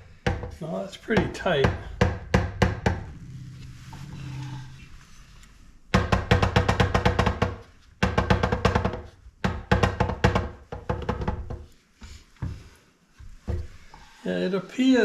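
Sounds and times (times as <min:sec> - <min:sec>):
rapid metallic knocking and rattling: 0:00.0 - 0:03.1.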